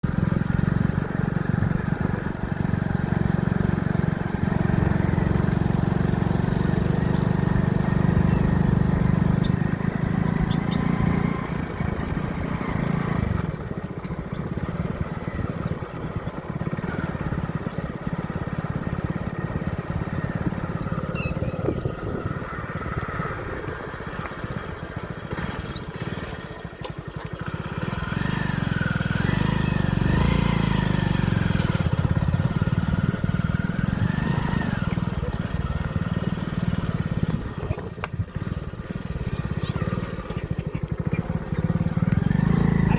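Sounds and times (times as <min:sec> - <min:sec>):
motorcycle engine running: 0:00.0 - 0:42.9
high whistling chirp: 0:37.5 - 0:38.3, 0:40.4 - 0:41.2.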